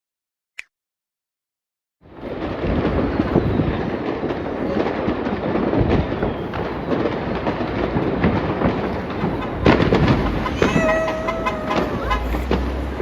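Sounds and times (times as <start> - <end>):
fireworks popping and crackling: 2.0 - 13.0
steady rumble: 8.5 - 13.0.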